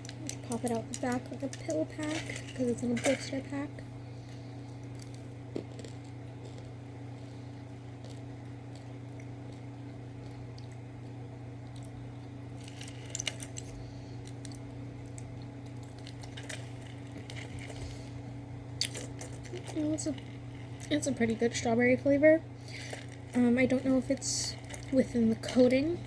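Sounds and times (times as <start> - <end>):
plastic blister pack crinkling: 0.0 - 3.7, 12.6 - 21.6, 22.6 - 25.6.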